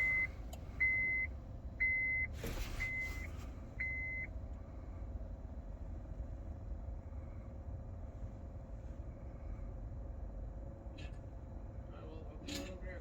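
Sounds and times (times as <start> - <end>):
electronic warning beeps: 0.0 - 4.3.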